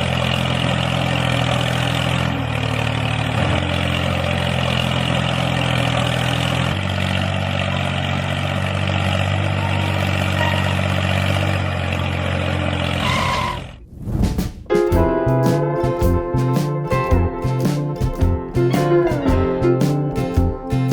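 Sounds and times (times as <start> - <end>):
engine running: 0.0 - 13.8.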